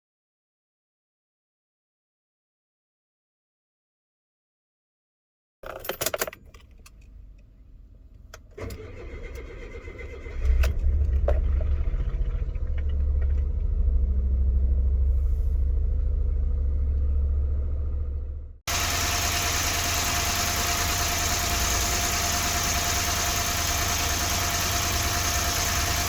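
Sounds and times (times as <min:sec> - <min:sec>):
engine idling unevenly: 0:10.2 - 0:26.0
starter clicks: 0:18.7 - 0:26.0.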